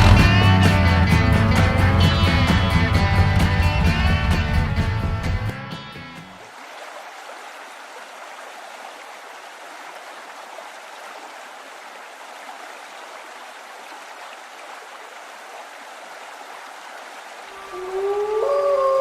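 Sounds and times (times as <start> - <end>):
steady rushing noise: 0.0 - 5.5.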